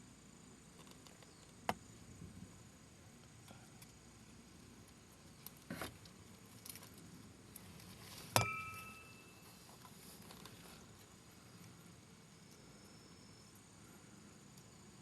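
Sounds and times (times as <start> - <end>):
sharp metallic clink: 8.4 - 9.5.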